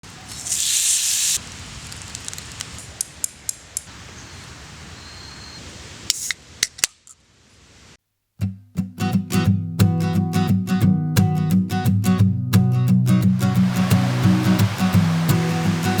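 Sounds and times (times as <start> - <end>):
campfire crackling and popping: 0.0 - 4.0, 13.3 - 16.0
low steady hiss: 0.0 - 8.4, 13.3 - 16.0
guitar music: 8.4 - 16.0.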